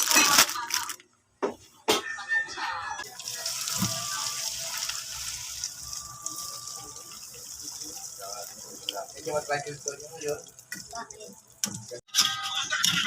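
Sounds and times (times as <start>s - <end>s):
water running from a tap: 3.0s - 12.1s.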